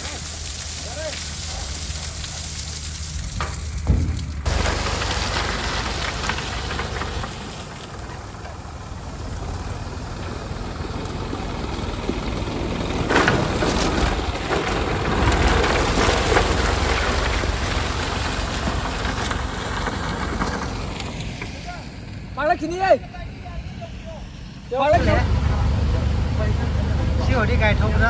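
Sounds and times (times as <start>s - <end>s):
noisy hiss: 0.0s - 10.5s
heavy machine engine rumbling: 0.0s - 22.4s, 24.4s - 28.0s
rough scraping: 0.9s - 10.6s.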